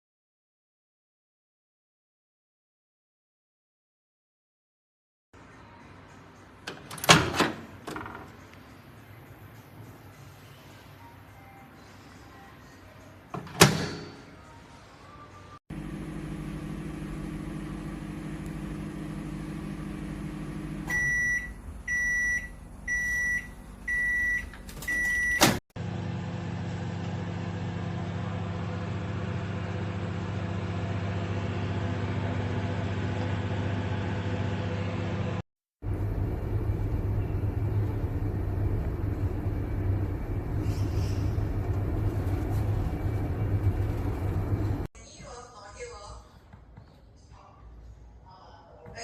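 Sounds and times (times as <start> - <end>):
microwave oven humming: 15.7 - 44.9.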